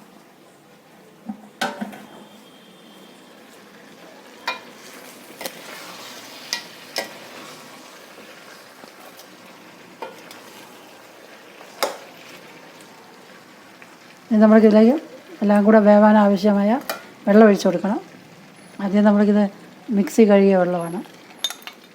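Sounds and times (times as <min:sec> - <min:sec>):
curry sizzling in pot: 0:00.0 - 0:21.9
spoon clanking against pot: 0:04.4 - 0:04.7, 0:21.4 - 0:21.8.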